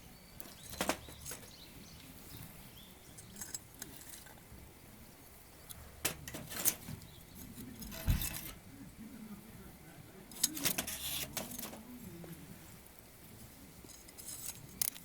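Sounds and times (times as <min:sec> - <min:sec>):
faint low voices: 0:00.0 - 0:15.0
twigs crackling and snapping: 0:14.0 - 0:15.0.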